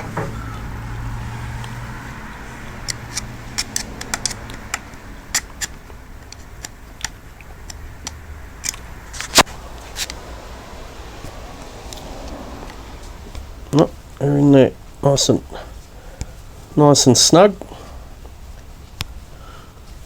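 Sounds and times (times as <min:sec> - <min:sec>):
small parts clicking and tapping: 0:02.8 - 0:09.4.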